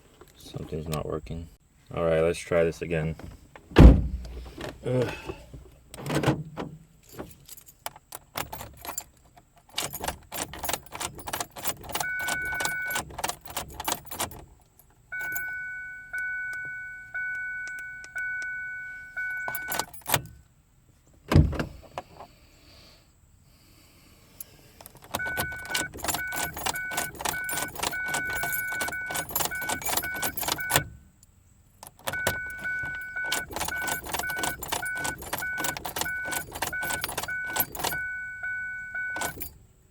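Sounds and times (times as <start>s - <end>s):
heavy thump: 3.7s - 4.8s
keys jangling on a keyring: 7.0s - 15.6s, 19.2s - 20.4s, 24.8s - 38.2s, 39.2s - 39.6s
car warning chime: 11.9s - 13.1s, 15.1s - 20.2s, 25.2s - 31.0s, 32.1s - 39.5s.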